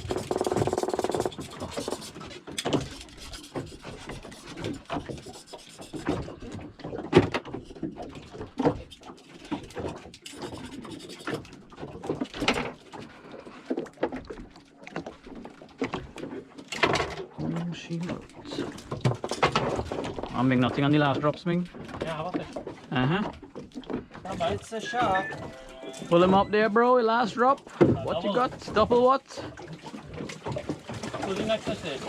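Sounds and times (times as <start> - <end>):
handling knocks and clicks on boat: 0.0 - 25.6, 27.4 - 32.0
short pitched sound: 24.8 - 26.6.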